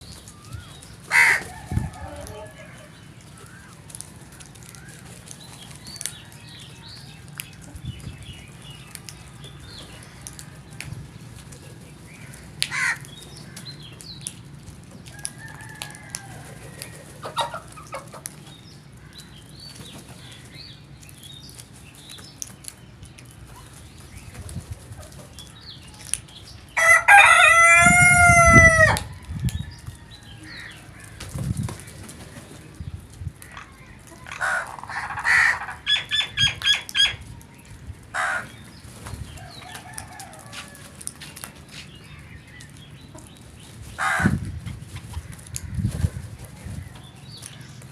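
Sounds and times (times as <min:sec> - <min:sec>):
rooster crowing: 0:01.1 - 0:02.9, 0:26.8 - 0:30.6, 0:39.4 - 0:41.0.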